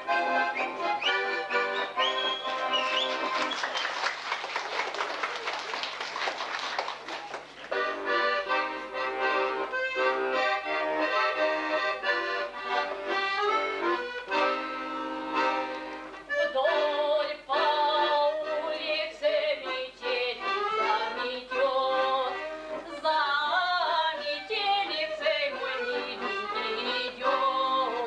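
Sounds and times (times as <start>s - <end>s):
accordion playing folk tune: 0.0s - 4.2s, 7.2s - 28.0s
audience clapping: 2.0s - 8.0s.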